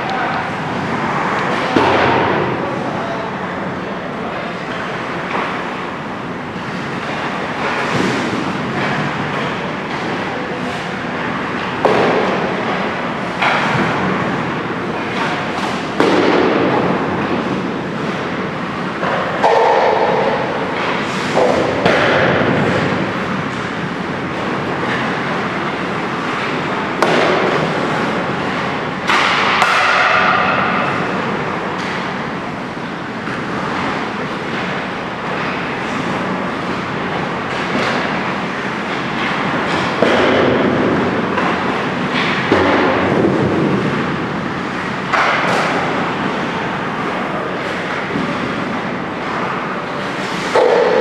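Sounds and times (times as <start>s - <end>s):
sticks and pucks knocking: 19.0s - 23.7s, 28.5s - 30.9s, 50.4s - 51.0s.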